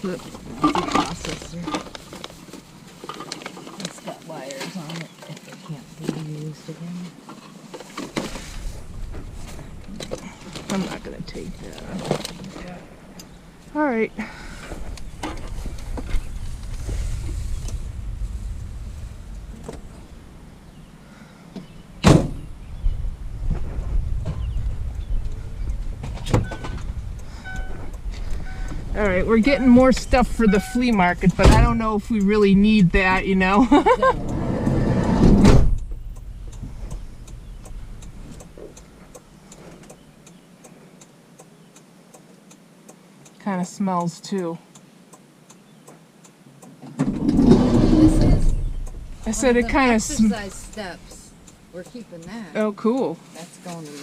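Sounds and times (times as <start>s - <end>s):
vehicle low rumble: 0.0s - 41.8s, 46.3s - 54.0s
vehicle door slamming: 14.5s - 22.7s, 26.0s - 29.9s, 31.4s - 31.8s, 33.8s - 36.0s
indicator flasher clicking: 35.7s - 40.4s.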